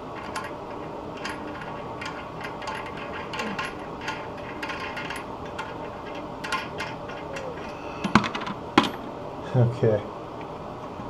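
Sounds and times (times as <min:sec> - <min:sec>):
hand tools clicking on metal: 0:00.2 - 0:09.0.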